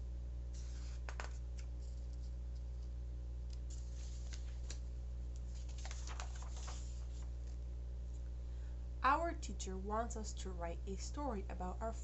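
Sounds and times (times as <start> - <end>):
low electrical hum: 0.0 - 12.0
book pages turning: 0.5 - 2.9, 3.5 - 7.6.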